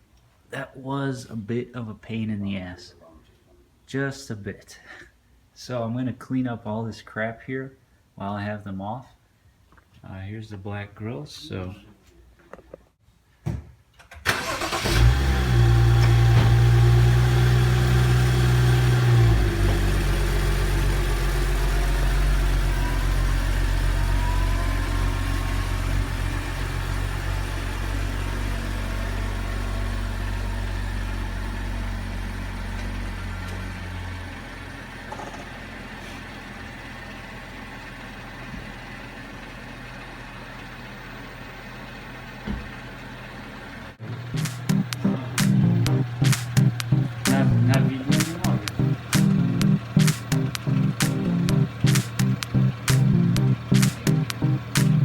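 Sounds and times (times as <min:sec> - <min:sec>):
car engine running: 0:14.8 - 0:33.8, 0:44.0 - 0:55.0.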